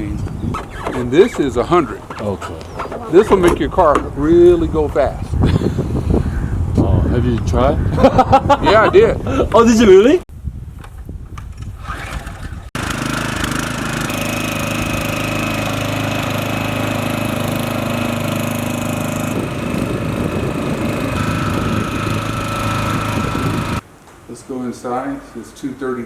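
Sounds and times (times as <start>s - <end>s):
light aircraft engine running: 11.9s - 23.8s.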